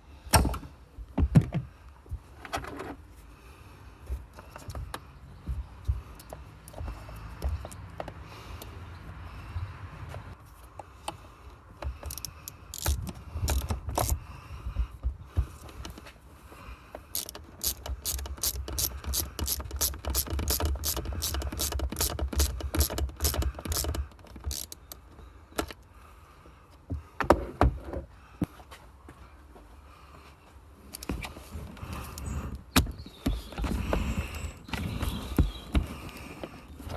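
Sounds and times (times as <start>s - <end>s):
hand tool clicks and knocks: 5.8s - 8.8s, 11.8s - 14.2s, 17.0s - 25.9s
rapid ratchet clicking: 12.0s - 14.2s, 17.1s - 25.7s.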